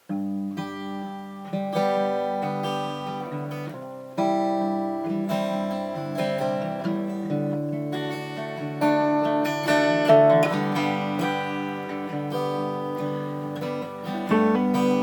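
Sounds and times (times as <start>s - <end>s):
acoustic guitar strumming: 0.0s - 15.0s.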